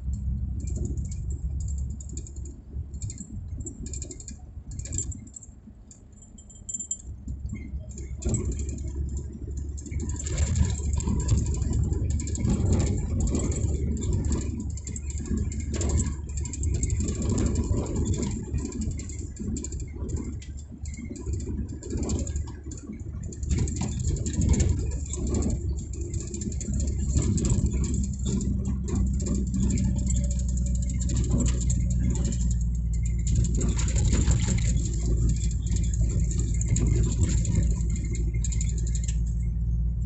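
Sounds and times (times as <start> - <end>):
engine rumbling: 0.0 - 40.0
loose rattling: 6.7 - 39.7.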